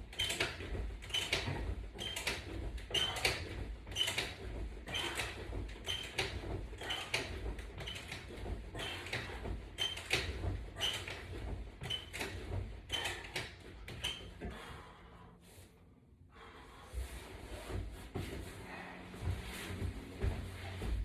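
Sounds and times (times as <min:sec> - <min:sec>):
exercise straps squeaking and clicking: 0:00.1 - 0:14.6
thumps and rustling on mat: 0:00.1 - 0:14.7, 0:17.0 - 0:21.0.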